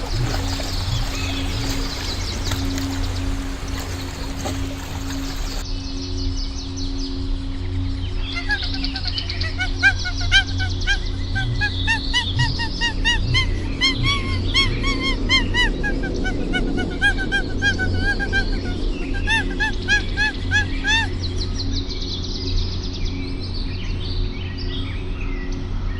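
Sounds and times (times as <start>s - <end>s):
flock of birds calling: 0.0s - 5.6s.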